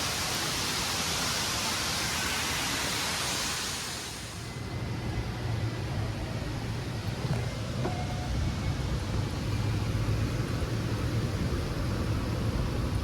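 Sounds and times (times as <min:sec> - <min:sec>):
low engine hum: 0:04.5 - 0:13.0.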